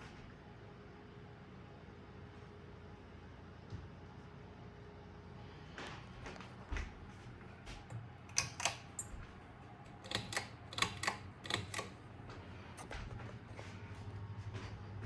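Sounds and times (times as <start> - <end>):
sharp irregular clicks: 9.9 - 12.0.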